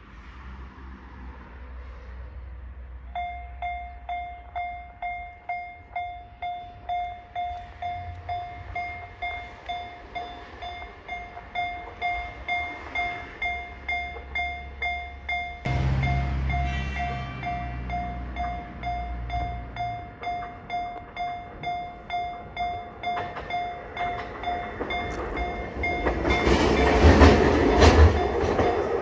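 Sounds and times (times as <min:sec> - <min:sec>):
level crossing alarm ringing: 0:03.2 - 0:29.0
low steady rumble: 0:15.7 - 0:20.1.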